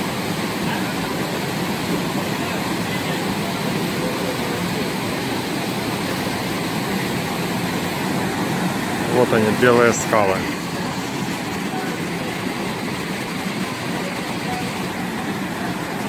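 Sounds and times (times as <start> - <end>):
river and waterfall rushing: 7.2 - 11.0.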